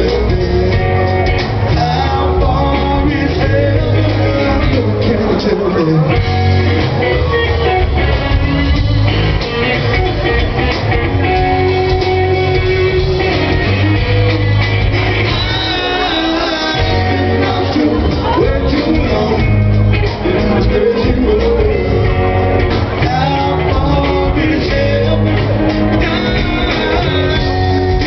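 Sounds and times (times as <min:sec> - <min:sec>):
person singing lead vocal: 0:00.0 - 0:07.6, 0:15.0 - 0:28.0
bass guitar: 0:00.0 - 0:28.0
drums: 0:00.0 - 0:28.0
electric guitar: 0:00.0 - 0:28.0.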